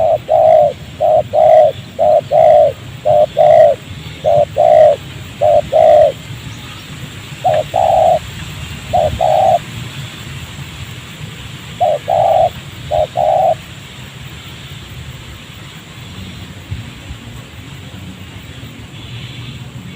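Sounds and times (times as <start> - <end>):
dove cooing: 0.0 - 6.2, 7.4 - 8.3, 8.9 - 9.6, 11.8 - 13.6.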